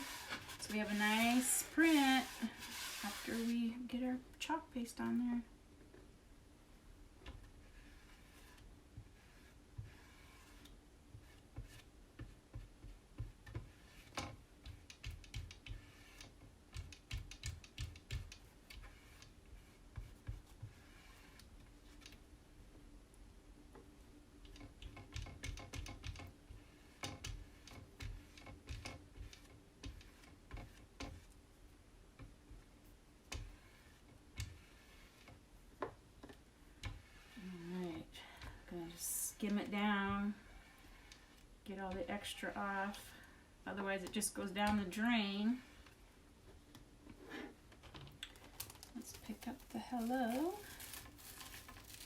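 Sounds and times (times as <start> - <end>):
squeegee scraping and clicking: 0.0 - 3.7, 7.2 - 22.2, 24.4 - 31.4, 36.2 - 43.0.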